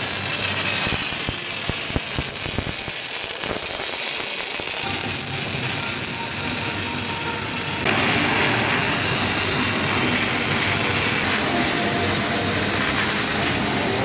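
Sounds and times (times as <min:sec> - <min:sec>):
machinery humming: 0:04.6 - 0:14.0.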